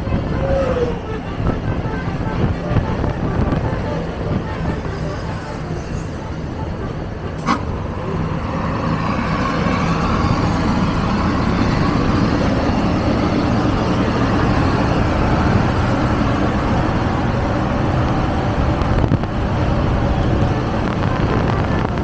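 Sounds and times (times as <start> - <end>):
highway traffic noise: 0.0 - 22.0.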